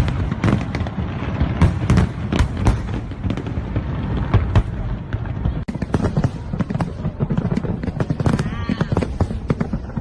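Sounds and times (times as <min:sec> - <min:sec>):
fireworks bangs and cracks: 0:00.0 - 0:10.0.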